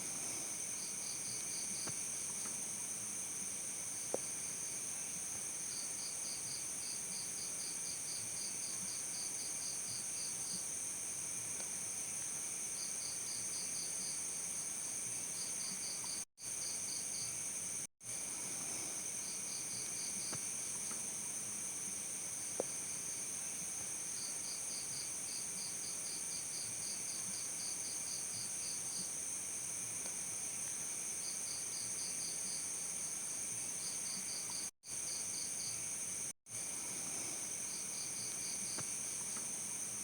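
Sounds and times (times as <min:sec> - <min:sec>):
crickets chirping: 0:12.0 - 0:40.0.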